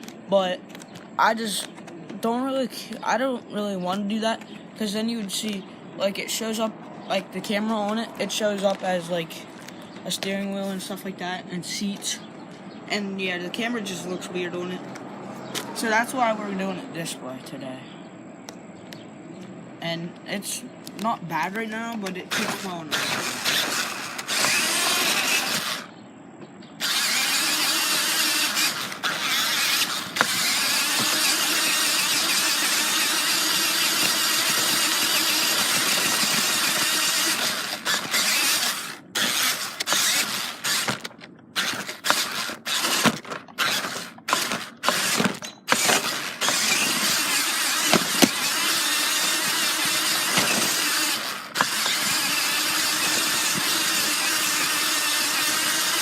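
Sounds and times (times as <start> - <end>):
wheels rolling: 20.4 - 56.0
toy car motor and gears: 21.4 - 25.9, 26.8 - 56.0.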